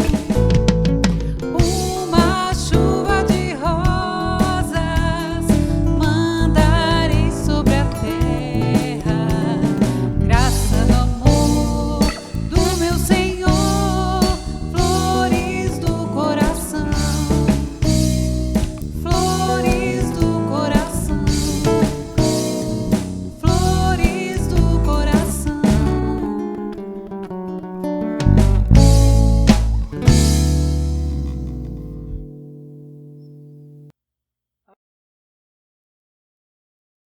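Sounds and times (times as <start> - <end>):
drum kit beat: 0.0 - 26.4, 28.2 - 32.3
bass: 0.0 - 26.7, 27.9 - 33.9
guitar: 0.0 - 33.9
person singing: 1.2 - 18.2, 19.0 - 26.9.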